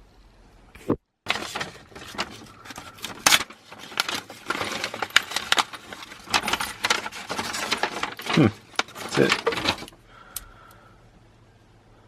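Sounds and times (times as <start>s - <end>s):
hand tools clicking and clinking: 1.9s - 10.5s.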